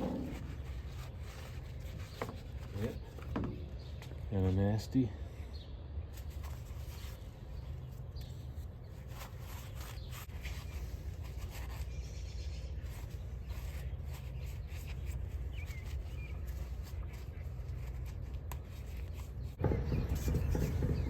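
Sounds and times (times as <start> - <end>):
scraping and rubbing engine part: 0.0 - 4.7, 6.1 - 21.0
faint bird chirps: 11.6 - 18.0.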